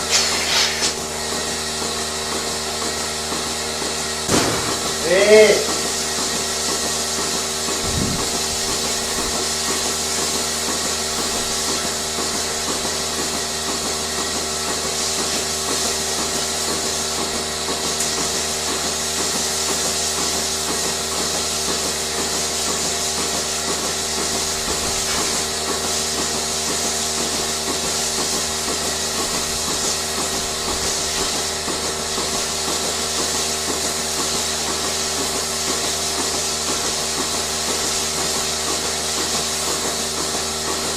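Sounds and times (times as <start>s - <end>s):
vacuum pump hum and hiss: 0.0s - 40.9s
fast regular pulsing: 7.7s - 12.5s.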